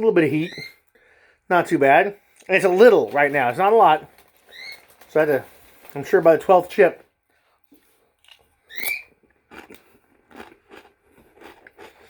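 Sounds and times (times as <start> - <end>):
chips being chewed crunching: 7.7 - 12.0.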